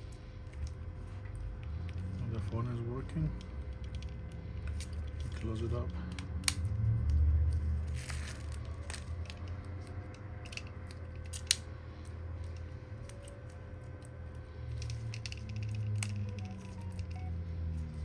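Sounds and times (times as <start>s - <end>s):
low steady hum: 0.0s - 18.0s
plastic phone parts clicking: 3.4s - 7.2s, 7.9s - 11.7s, 14.8s - 17.3s.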